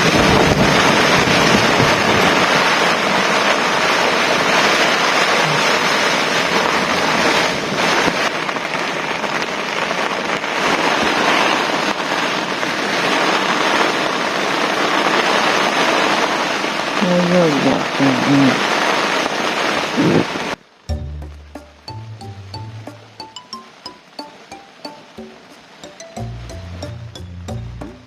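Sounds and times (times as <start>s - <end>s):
gusting wind: 0.0s - 20.6s
heavy rain falling: 0.0s - 28.0s.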